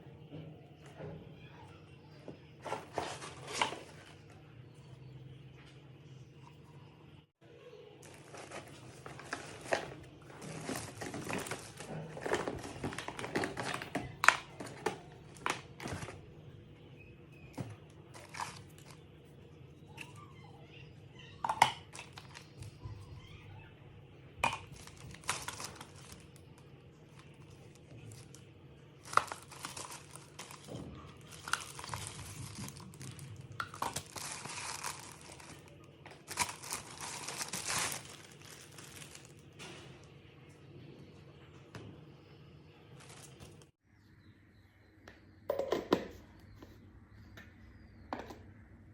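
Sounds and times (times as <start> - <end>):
packaging crinkling and tearing: 8.0 - 16.2, 18.1 - 19.0, 24.4 - 39.6, 43.0 - 43.7.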